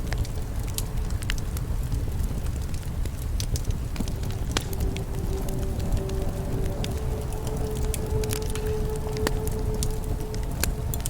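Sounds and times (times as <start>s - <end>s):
bonfire crackling and popping: 0.0s - 11.0s
low rumble of flames: 0.0s - 11.0s
faint steady whistle: 3.6s - 11.0s.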